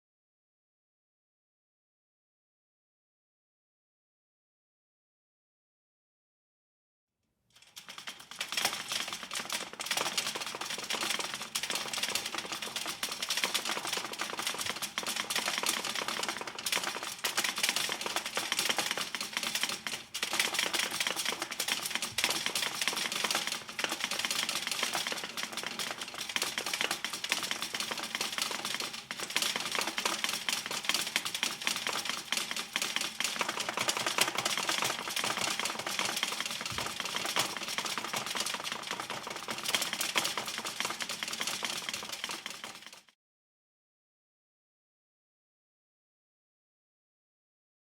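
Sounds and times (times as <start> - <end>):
metal rattling: 7.7 - 42.8.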